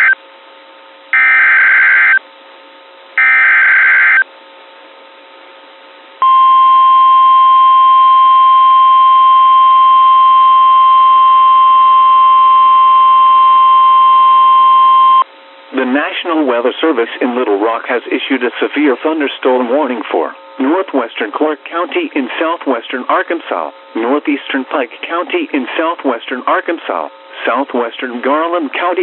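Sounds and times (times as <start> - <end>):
steady warning alarm tone: 1.1 - 2.2, 3.2 - 4.2, 6.2 - 15.2.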